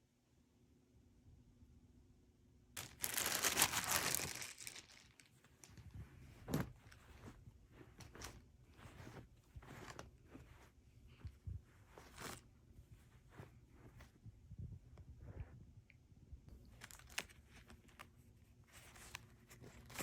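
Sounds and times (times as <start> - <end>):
packaging crinkling and rustling: 2.8 - 12.5, 16.6 - 20.0.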